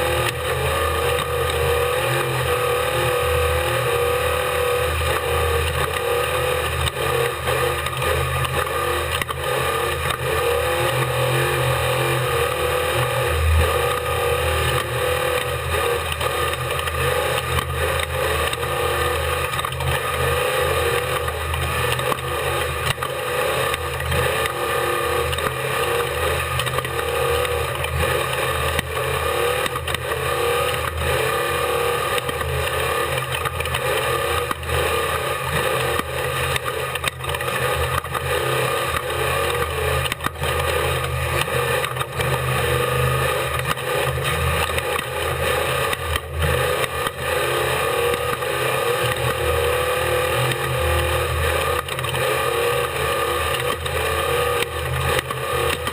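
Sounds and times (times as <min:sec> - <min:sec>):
race vehicle engine under load: 0:00.0 - 0:55.9.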